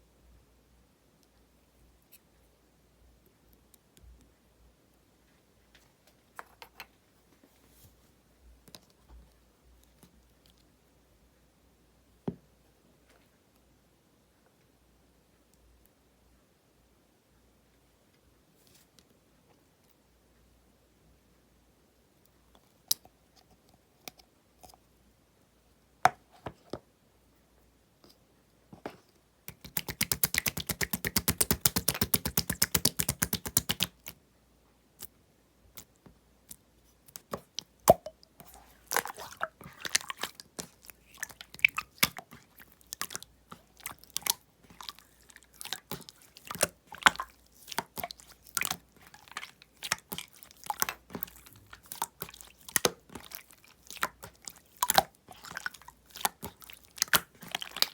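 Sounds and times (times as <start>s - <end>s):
slime squeezed by hand: 29.5s - 34.1s, 37.2s - 57.9s.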